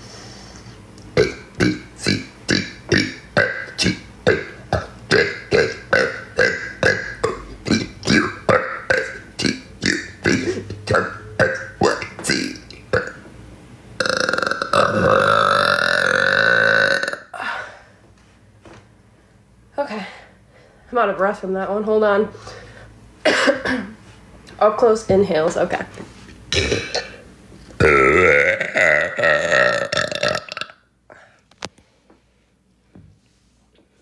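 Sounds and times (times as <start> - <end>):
woman burping: 1.2 - 13.2, 14.0 - 17.8, 23.3 - 24.0, 26.5 - 27.2, 27.8 - 30.8.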